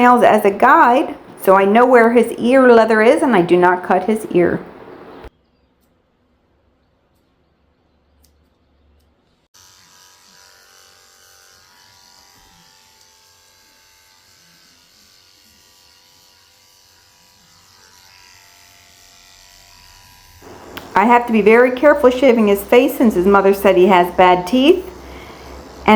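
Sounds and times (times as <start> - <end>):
electric clippers running: 9.6 - 25.9
faint clicks: 20.6 - 21.0.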